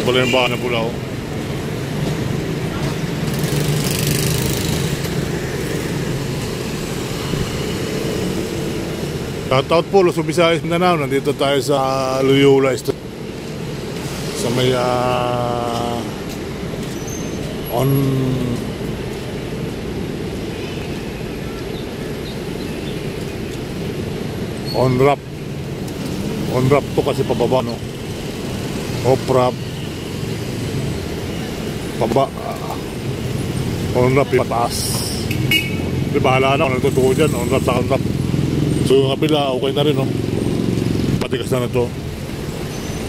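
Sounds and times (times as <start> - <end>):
road traffic rumble: 0.0 - 43.0
small vehicle engine running: 2.8 - 9.2.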